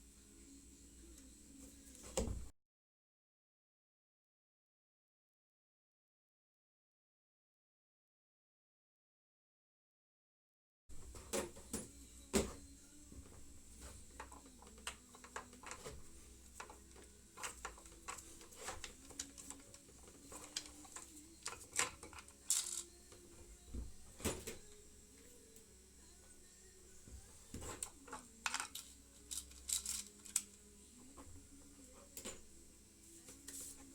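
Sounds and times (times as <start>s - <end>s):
metal tools clinking and knocking: 28.1s - 30.5s.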